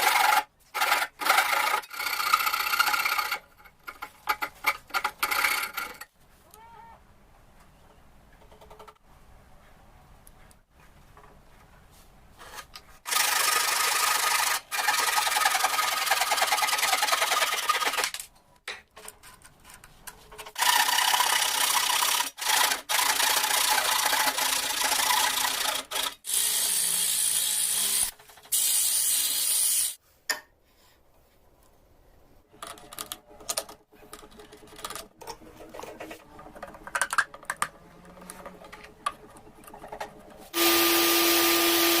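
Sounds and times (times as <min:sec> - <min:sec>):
scattered knocks and clicks: 0:08.3 - 0:09.0.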